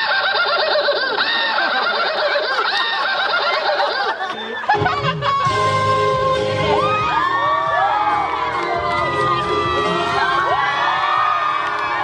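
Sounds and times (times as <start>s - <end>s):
people laughing: 0.0s - 6.1s
overlapping voices: 0.6s - 12.0s.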